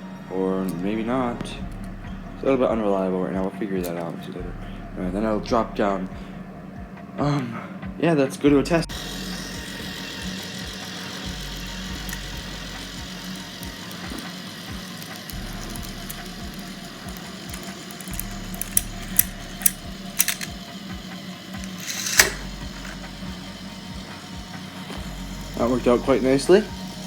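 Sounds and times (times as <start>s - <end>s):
lift chain whirring: 8.9s - 27.0s
plastic car clicking on track: 10.0s - 23.1s.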